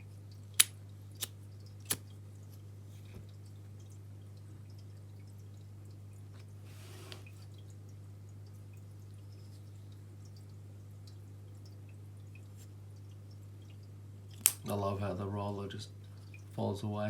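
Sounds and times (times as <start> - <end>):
low electrical hum: 0.0 - 17.0
soft rustle: 6.4 - 7.5.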